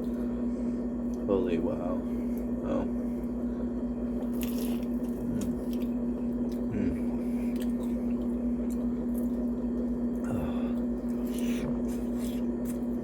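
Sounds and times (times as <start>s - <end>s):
steady low hum: 0.0s - 13.0s
chewing and mouth smacking: 4.2s - 6.7s, 7.4s - 10.2s, 10.8s - 13.0s.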